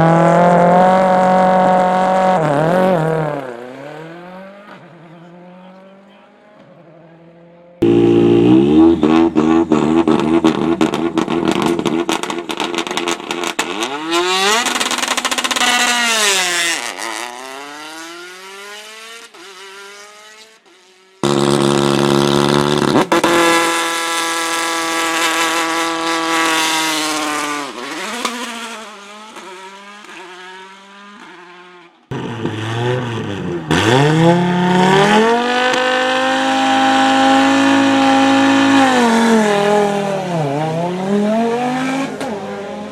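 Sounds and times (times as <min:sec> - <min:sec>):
rally car engine revving: 0:00.0 - 0:42.9
engine crackles and pops: 0:09.7 - 0:16.4, 0:21.2 - 0:23.5.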